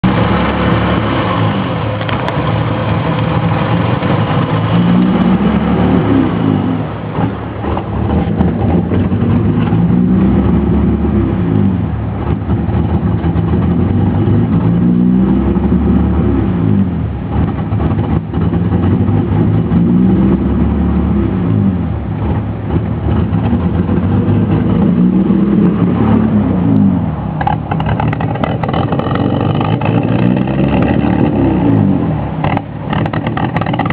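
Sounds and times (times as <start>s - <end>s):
car engine idling roughly: 27.4s - 30.2s, 32.4s - 33.9s.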